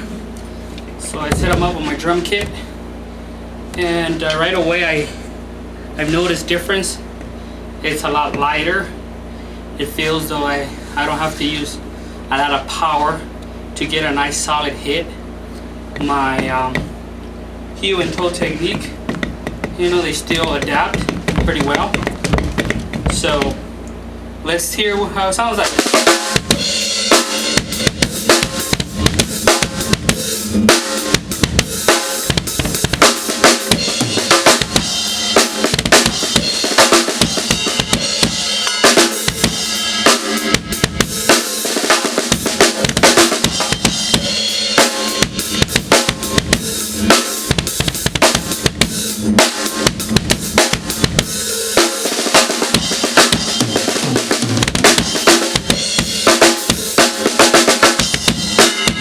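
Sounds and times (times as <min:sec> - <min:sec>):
bass drum strokes: 0:00.0 - 0:04.6, 0:18.0 - 0:24.3, 0:25.7 - 0:51.5, 0:52.6 - 0:57.1
snare drum hits: 0:01.3 - 0:02.0.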